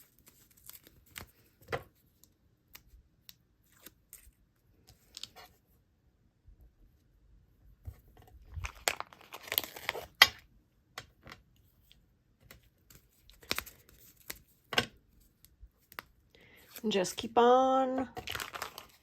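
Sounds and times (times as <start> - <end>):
sticker sheets crinkling and peeling: 0.0 - 2.9, 8.4 - 10.4, 11.2 - 19.0.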